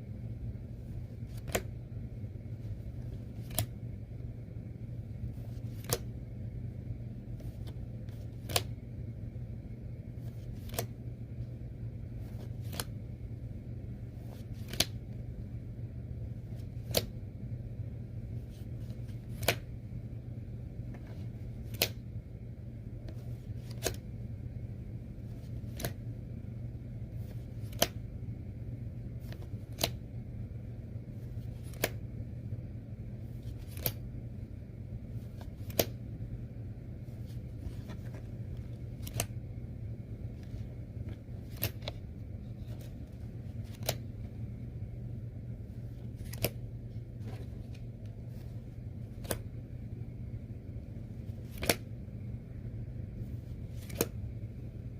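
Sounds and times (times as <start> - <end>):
steady low hum: 0.0 - 54.9
cards set down clicking: 1.3 - 1.7, 3.1 - 3.7, 5.3 - 6.1, 7.4 - 8.8, 10.2 - 10.9, 12.2 - 13.0, 14.2 - 15.0, 18.5 - 19.7, 20.9 - 22.0, 23.1 - 24.0, 25.3 - 26.0, 27.2 - 28.0, 29.2 - 30.0, 31.3 - 32.0, 33.4 - 34.0, 35.2 - 36.0, 37.1 - 39.3, 40.4 - 44.2, 45.9 - 46.6, 47.2 - 49.5, 51.3 - 51.9, 53.7 - 54.2.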